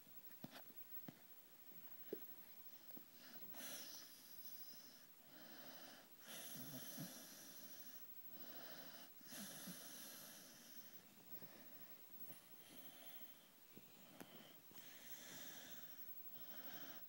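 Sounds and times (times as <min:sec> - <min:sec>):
dog snoring: 0:03.2 - 0:11.0, 0:14.0 - 0:17.0.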